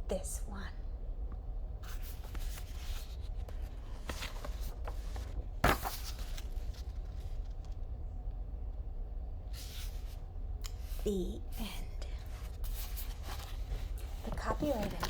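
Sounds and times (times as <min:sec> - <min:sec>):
low steady hum: 0:00.0 - 0:15.0
paper pages rustling: 0:01.8 - 0:07.8, 0:12.2 - 0:15.0.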